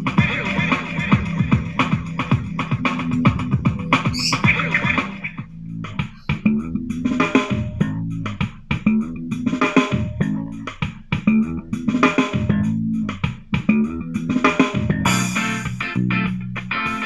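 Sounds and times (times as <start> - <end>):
pop song through speaker: 0.1 - 7.6.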